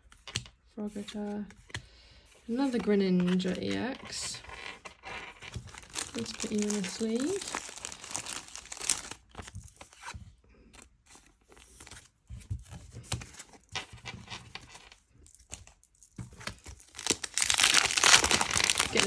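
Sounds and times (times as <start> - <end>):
plastic card sleeve rustling: 2.5 - 19.0
foil wrapper crinkling: 5.5 - 9.9, 15.4 - 19.0.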